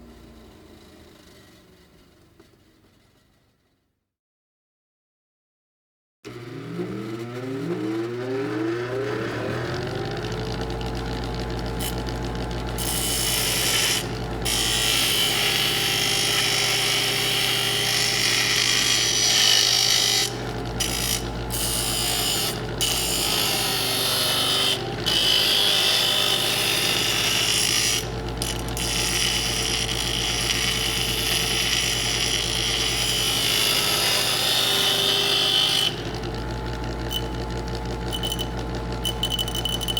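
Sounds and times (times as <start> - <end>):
electric grinder motor whine: 6.3 - 39.9.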